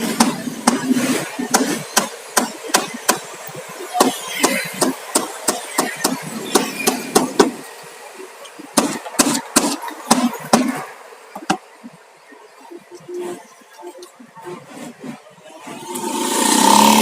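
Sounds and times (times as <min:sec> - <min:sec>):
hammer on wooden boards: 0:00.0 - 0:03.4, 0:04.0 - 0:07.6, 0:08.8 - 0:10.8.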